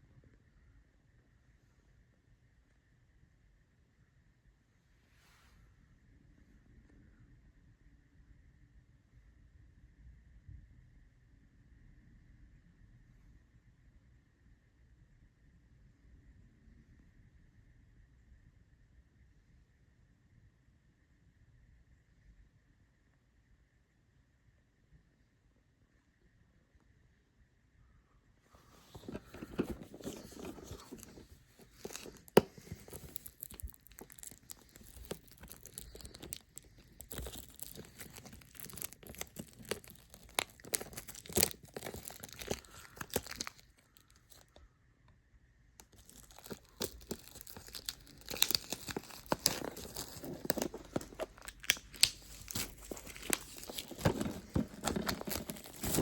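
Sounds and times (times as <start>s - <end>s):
packaging tearing and crinkling: 28.8s - 44.4s, 45.8s - 56.0s.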